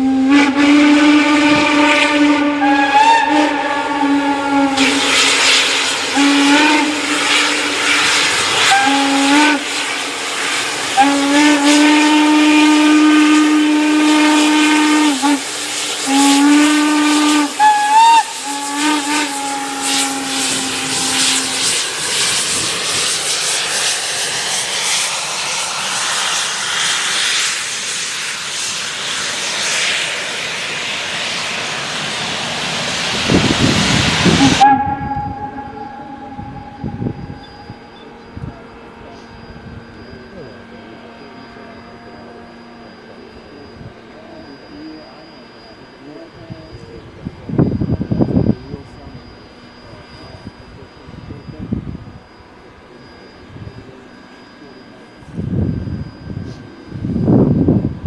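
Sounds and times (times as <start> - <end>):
locomotive exhaust chuffing: 0.0 - 39.6
locomotive steam hiss: 0.0 - 58.0
steam locomotive whistle blasts: 0.0 - 58.0.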